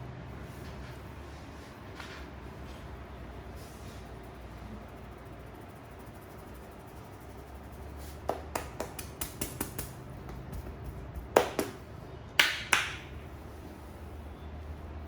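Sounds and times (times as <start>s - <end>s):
hand slaps on head: 8.3s - 11.8s.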